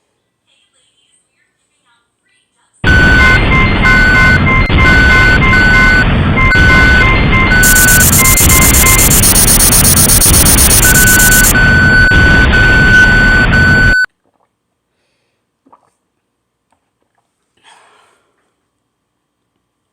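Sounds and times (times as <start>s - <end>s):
beeping tone: 2.8s - 14.1s
harsh distorted noise: 2.8s - 14.1s
shrill steady high tones: 4.2s - 14.1s.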